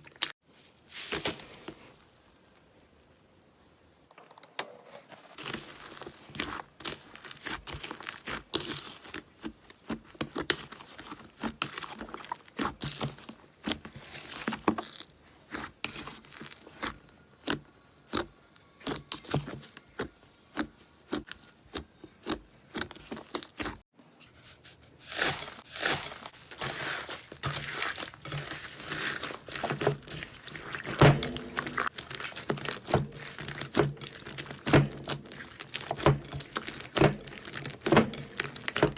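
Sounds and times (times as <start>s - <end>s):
slime squished by hand: 25.1s - 38.9s.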